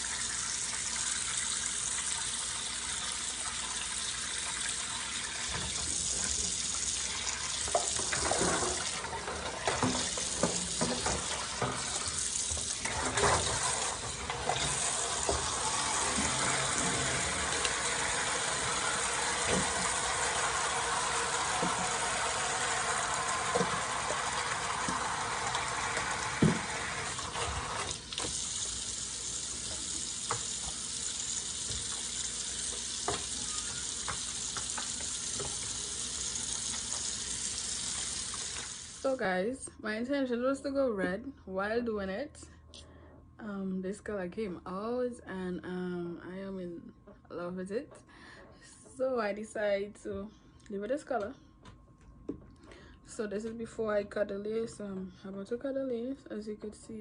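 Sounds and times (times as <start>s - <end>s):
tap water running into sink: 0.0s - 39.1s.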